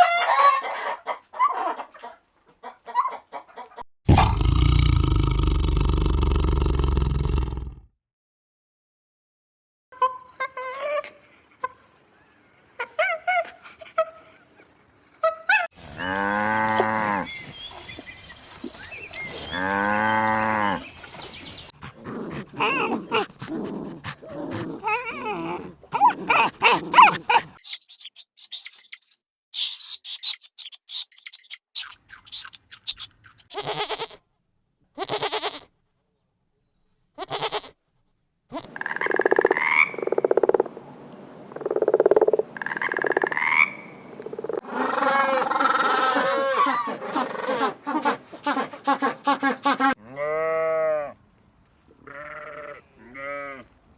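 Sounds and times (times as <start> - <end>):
short high chirps: 27.6 - 33.1
animal bleating: 32.9 - 34.2, 35.0 - 35.7, 37.2 - 37.8, 50.0 - 51.1, 52.0 - 53.7.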